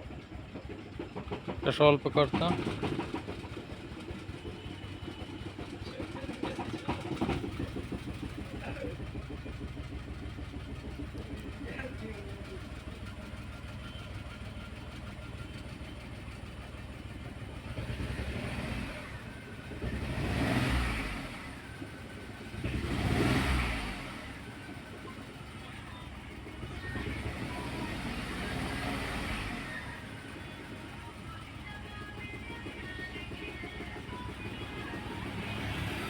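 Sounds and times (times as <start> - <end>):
car engine idling and revving: 0.0 - 36.0.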